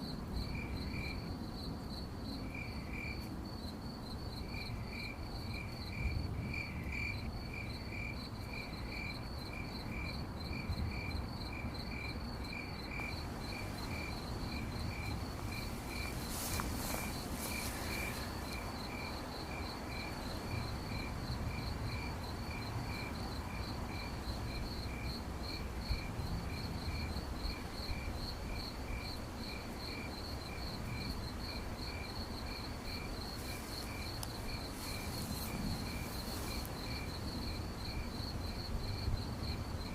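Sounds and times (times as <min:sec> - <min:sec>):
high fast cricket chirping: 0:00.0 - 0:39.9
low slow cricket chirping: 0:00.0 - 0:39.9.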